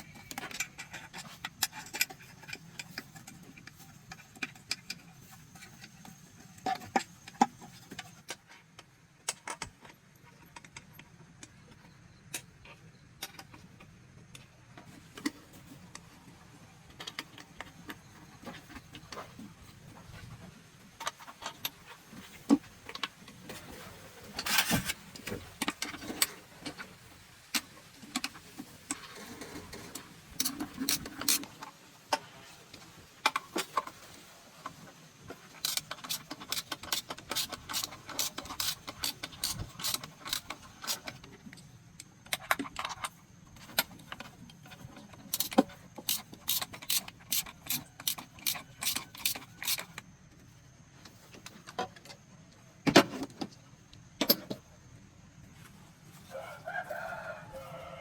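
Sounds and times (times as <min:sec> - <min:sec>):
hand tools clicking on metal: 0:27.5 - 0:31.7, 0:35.5 - 0:50.0
ratchet clicking regularly: 0:30.3 - 0:31.6, 0:35.5 - 0:44.3, 0:45.2 - 0:50.0.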